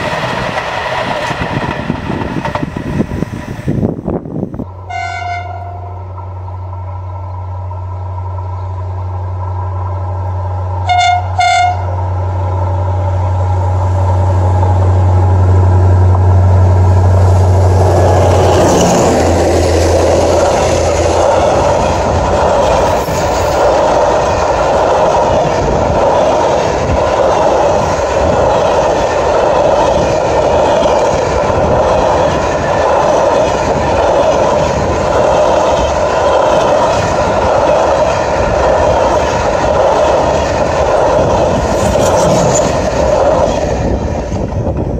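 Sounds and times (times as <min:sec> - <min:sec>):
train wheels clacking on rail: 0:00.0 - 0:03.6, 0:17.8 - 0:44.9
locomotive engine drone: 0:00.0 - 0:44.9
air horn blasts: 0:04.9 - 0:06.0, 0:10.8 - 0:11.9.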